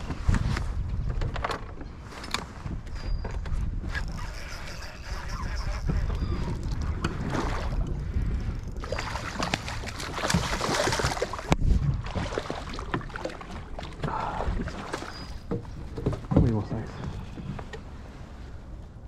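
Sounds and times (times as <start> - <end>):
wind rumble on microphone: 0.0 - 19.0
water splashing against kayak: 3.8 - 18.1.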